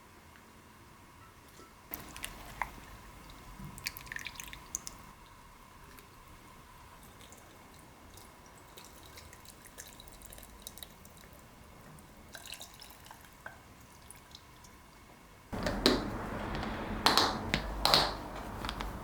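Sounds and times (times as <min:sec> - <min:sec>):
water dripping: 0:01.9 - 0:06.0
loud steady noise: 0:15.6 - 0:19.0.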